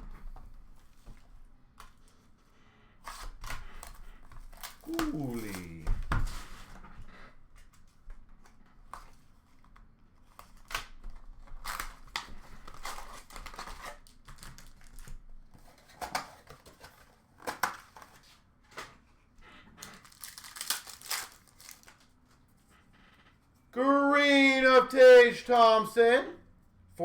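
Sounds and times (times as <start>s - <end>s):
cards being handled: 4.7s - 6.2s
wrapper crinkling and tearing: 19.8s - 22.1s.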